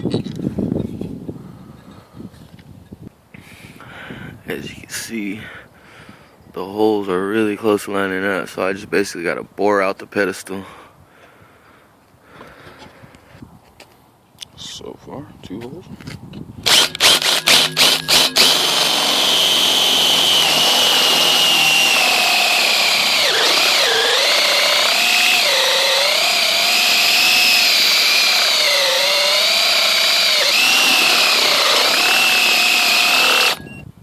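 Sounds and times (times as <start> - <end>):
electric drill boring: 16.6 - 33.6.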